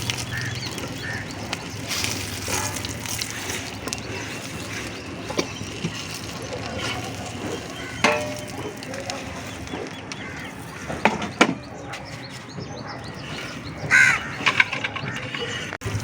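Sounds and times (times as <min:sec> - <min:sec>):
sharp knocks and clatters: 0:06.8 - 0:12.3, 0:14.1 - 0:15.8.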